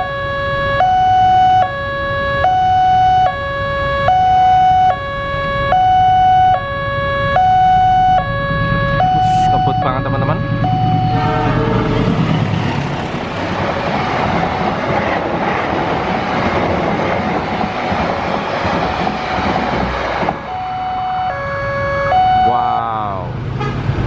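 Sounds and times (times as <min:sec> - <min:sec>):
two-tone crossing siren: 0:00.0 - 0:15.3, 0:18.9 - 0:23.2
train passing at speed: 0:08.0 - 0:22.2, 0:23.0 - 0:24.0.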